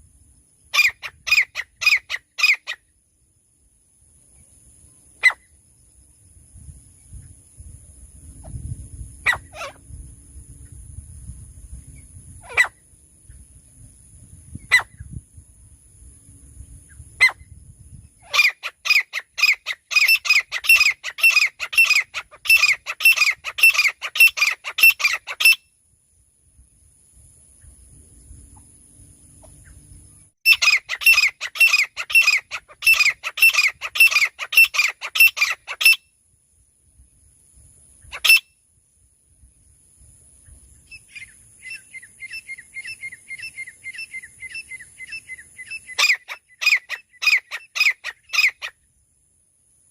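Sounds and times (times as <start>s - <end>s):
francolin calling: 0.2s - 3.3s, 4.2s - 7.5s, 8.4s - 10.8s, 11.7s - 15.2s, 16.6s - 25.8s, 29.3s - 36.2s, 37.9s - 38.8s, 39.6s - 48.9s.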